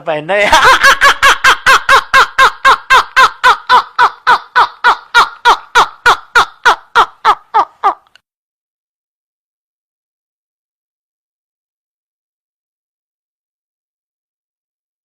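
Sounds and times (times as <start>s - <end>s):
high-pitched rhythmic laughter: 0.5s - 8.2s.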